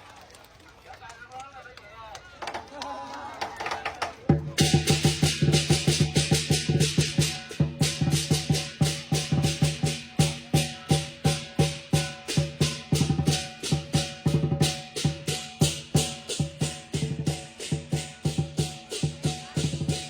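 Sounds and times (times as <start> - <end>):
large drum beating: 4.3 - 20.0
cymbals clashing: 4.6 - 20.0.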